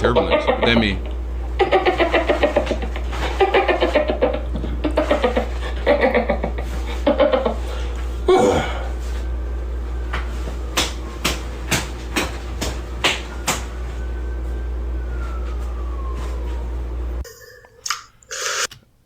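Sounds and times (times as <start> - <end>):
steady low hum: 0.0 - 19.0
hand slapping bare skin: 10.1 - 13.7.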